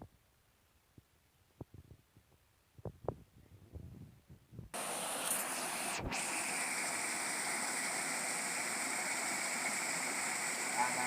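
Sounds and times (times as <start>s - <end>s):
soft low thumps: 0.9s - 4.8s
flowing water rushing: 4.8s - 11.0s.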